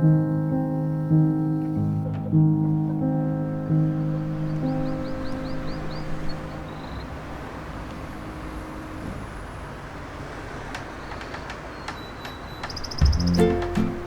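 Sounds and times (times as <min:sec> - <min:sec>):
distant road traffic rumble: 0:01.3 - 0:14.0
faint high ticks and chirps: 0:10.7 - 0:13.7.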